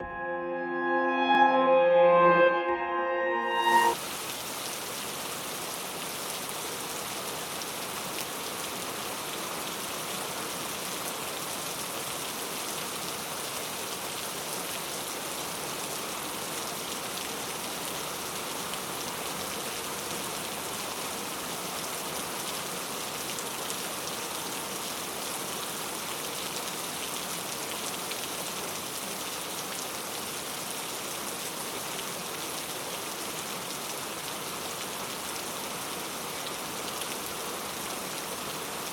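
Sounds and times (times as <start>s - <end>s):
steady rain falling: 4.0s - 38.9s.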